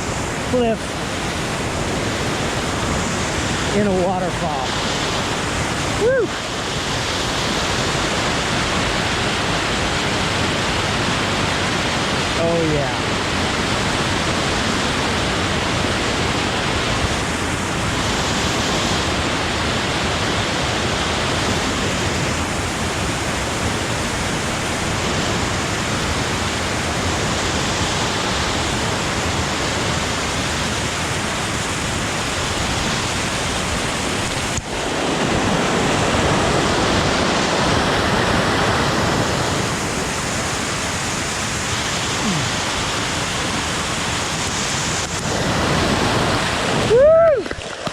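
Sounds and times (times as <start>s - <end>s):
waterfall rushing: 0.0s - 47.9s.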